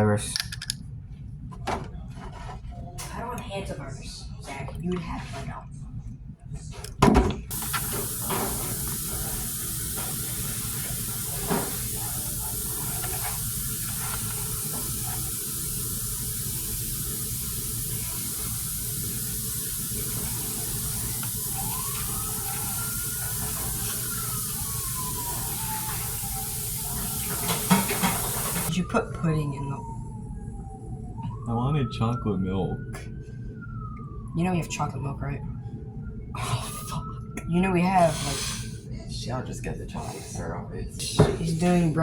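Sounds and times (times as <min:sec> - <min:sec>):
water running from a tap: 0:07.5 - 0:28.7.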